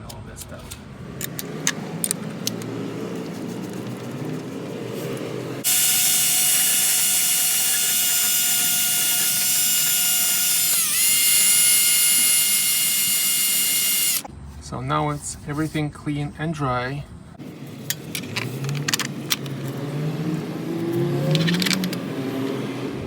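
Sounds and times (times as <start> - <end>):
handling clicks and scraping: 0.0 - 5.8, 17.4 - 22.6
electric drill running: 5.5 - 14.3.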